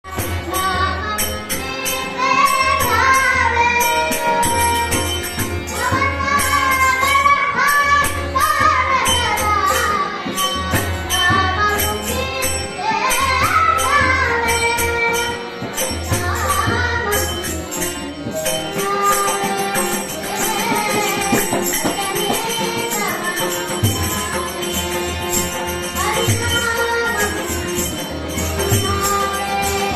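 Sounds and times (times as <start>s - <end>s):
jingling percussion: 0.0s - 29.9s
boy singing: 0.1s - 29.9s.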